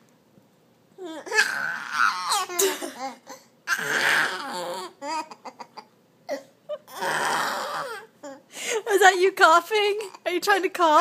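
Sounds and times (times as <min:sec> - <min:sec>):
baby laughing and squealing: 0:01.2 - 0:08.4.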